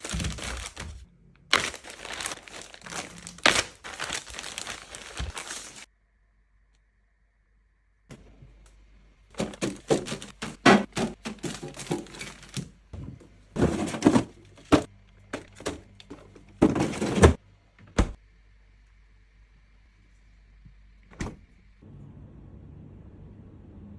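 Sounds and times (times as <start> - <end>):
containers sliding: 9.3 - 17.4
plastic containers clicking and knocking: 9.4 - 17.4.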